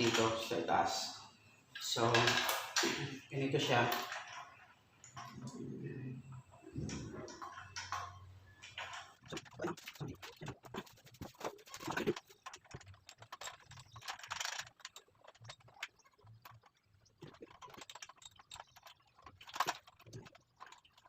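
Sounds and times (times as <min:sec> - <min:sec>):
metal parts clicking and knocking: 0:06.8 - 0:21.0.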